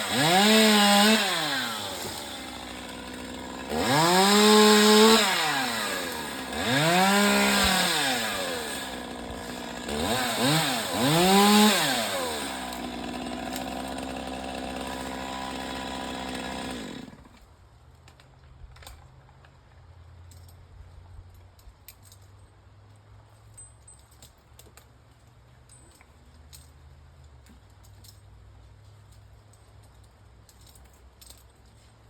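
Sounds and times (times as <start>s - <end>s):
chainsaw idling and revving: 0.0s - 17.5s
light metallic clicks and jingles: 18.0s - 32.0s.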